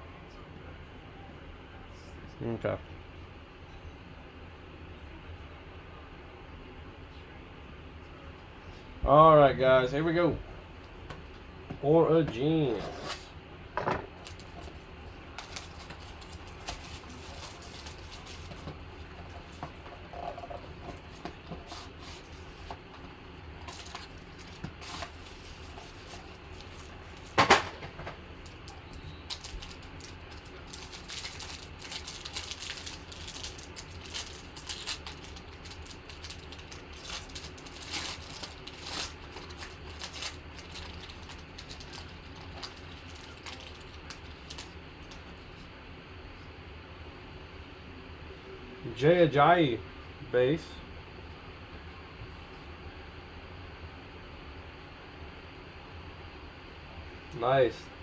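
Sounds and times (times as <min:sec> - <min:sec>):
faint steady hum: 0:00.0 - 0:58.0
card packs rustling: 0:14.2 - 0:45.3.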